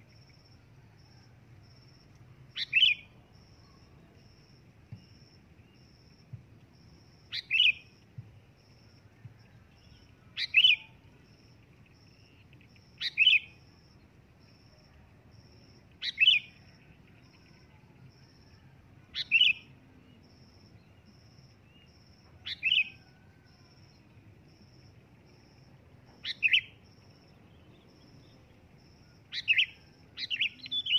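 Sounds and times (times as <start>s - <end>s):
bulbul calling: 2.5s - 3.2s, 7.3s - 8.3s, 9.3s - 11.0s, 12.3s - 13.6s, 26.2s - 26.8s, 29.3s - 30.9s.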